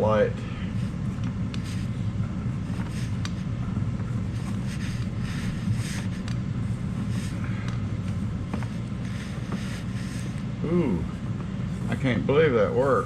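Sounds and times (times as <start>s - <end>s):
low hum: 0.0s - 13.0s
wire rustling and scraping: 0.7s - 7.4s.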